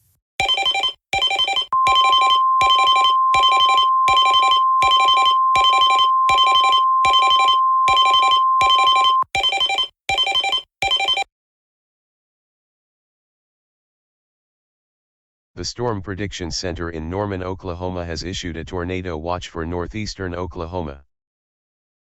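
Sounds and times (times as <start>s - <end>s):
long steady alert tone: 0.4s - 11.2s
short chord-like alarm beeps: 0.4s - 11.2s.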